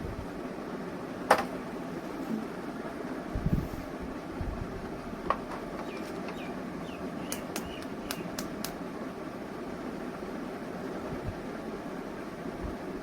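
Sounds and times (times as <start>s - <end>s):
sharp light clicks: 7.3s - 8.8s.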